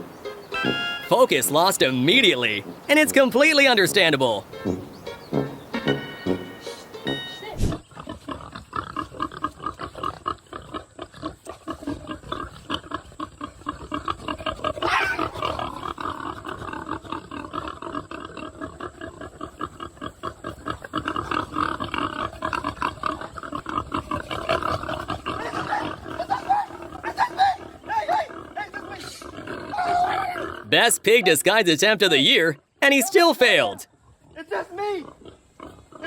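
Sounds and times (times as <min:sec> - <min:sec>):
pigs grunting: 0:00.0 - 0:31.4, 0:32.1 - 0:36.0
pig high call: 0:00.5 - 0:01.7, 0:14.7 - 0:15.8, 0:25.3 - 0:31.3.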